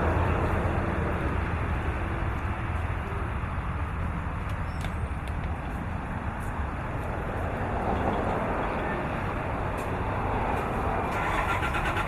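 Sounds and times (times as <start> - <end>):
fire engine running: 0.0 - 12.0.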